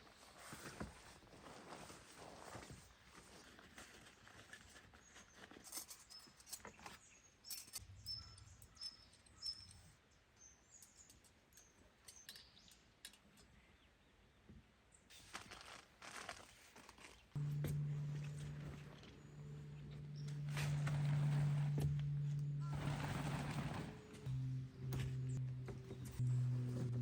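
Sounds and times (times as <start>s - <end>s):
bird chirping: 6.1s - 12.9s
low steady hum: 17.4s - 27.0s.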